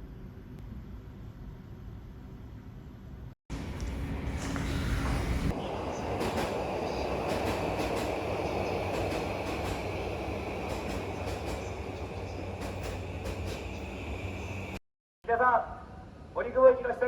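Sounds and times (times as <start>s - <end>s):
train rumbling on rails: 3.5s - 14.8s.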